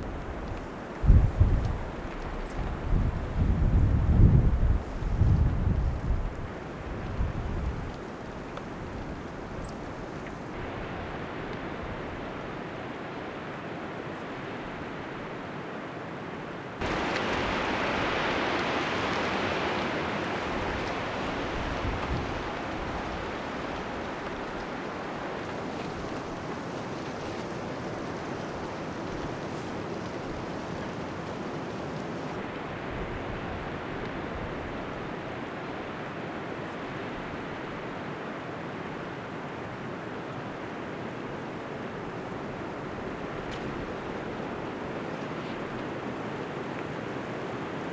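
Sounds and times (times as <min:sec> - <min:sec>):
blizzard wind rushing: 0:00.0 - 0:15.6, 0:16.8 - 0:38.0.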